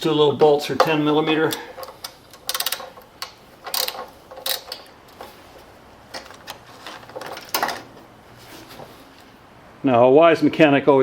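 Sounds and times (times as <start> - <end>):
socket ratchet clicking: 0.8 - 5.3.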